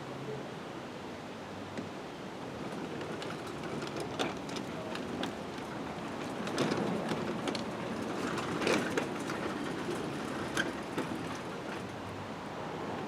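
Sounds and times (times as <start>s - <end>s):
garage door rolling on tracks: 2.5s - 12.0s
rollers clicking and ticking: 2.5s - 12.0s.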